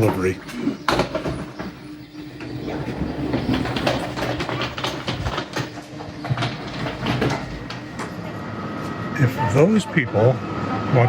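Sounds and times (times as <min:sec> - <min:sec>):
train clicks and knocks: 0:02.4 - 0:08.3
train low hum: 0:06.5 - 0:11.0.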